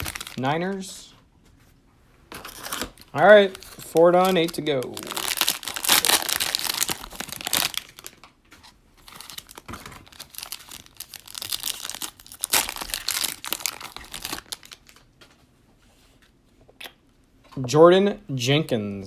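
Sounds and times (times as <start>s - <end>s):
cellophane wrapper crinkling and tearing: 0.0s - 0.5s, 2.3s - 15.1s.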